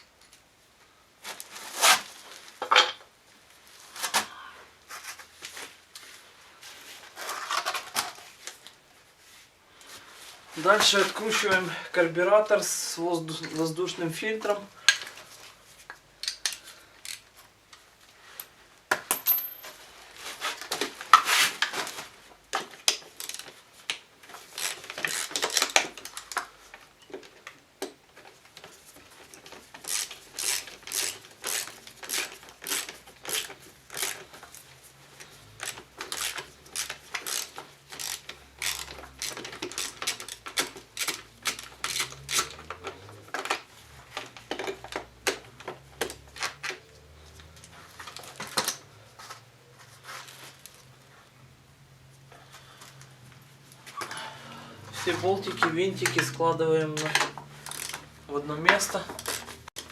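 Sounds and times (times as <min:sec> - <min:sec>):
metal tool clinks and knocks: 0:19.1 - 0:19.8.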